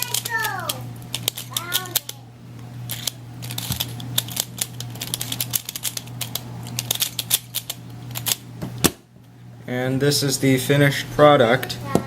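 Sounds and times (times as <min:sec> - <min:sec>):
puzzle pieces clicking: 0:00.0 - 0:02.2
low steady hum: 0:00.0 - 0:12.0.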